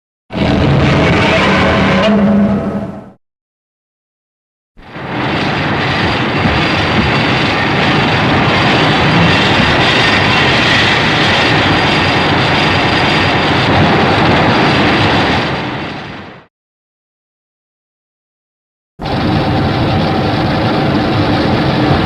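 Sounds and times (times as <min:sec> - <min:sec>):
loud steady rushing noise: 0:04.8 - 0:16.5, 0:19.0 - 0:22.0
low rumble: 0:04.8 - 0:16.5, 0:19.0 - 0:22.0.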